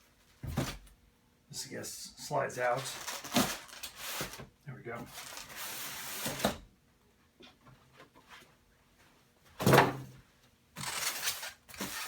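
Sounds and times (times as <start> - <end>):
box thumping down: 0.4 - 0.9
cardboard rustling: 2.7 - 4.4.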